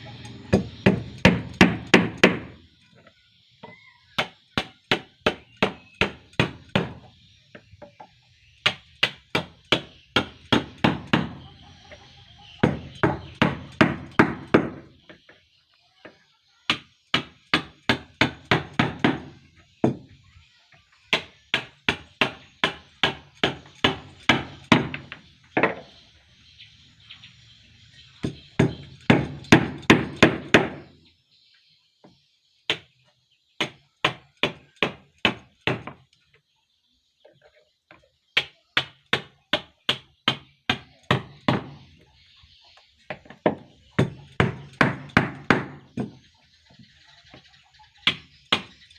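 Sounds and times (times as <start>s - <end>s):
hammering sharp blows: 0.5s - 2.6s, 4.2s - 7.1s, 8.6s - 11.4s, 16.7s - 20.1s, 21.1s - 25.2s, 28.2s - 30.8s, 33.6s - 36.0s, 38.4s - 41.8s, 43.5s - 46.2s, 48.0s - 48.7s.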